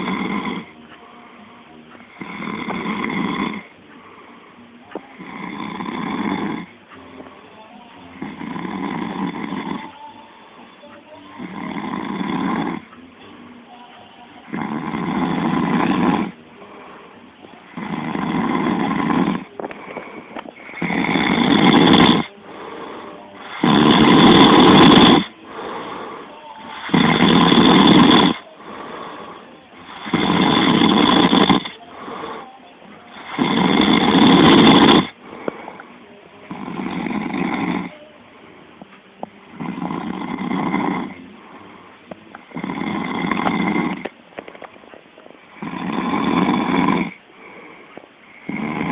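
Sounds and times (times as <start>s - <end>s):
man snoring: 0.0s - 0.8s, 2.0s - 3.7s, 5.1s - 6.7s, 8.1s - 10.0s, 11.4s - 12.9s, 14.4s - 16.4s, 17.7s - 35.9s, 36.5s - 38.0s, 39.5s - 41.7s, 42.4s - 44.1s, 45.5s - 47.7s, 48.3s - 48.9s
soft breaths: 0.0s - 48.9s.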